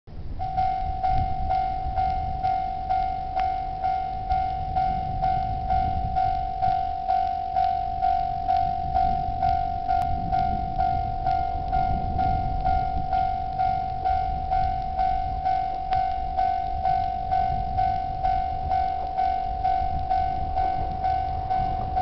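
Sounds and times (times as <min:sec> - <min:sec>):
level crossing warning bell: 0:00.1 - 0:22.0.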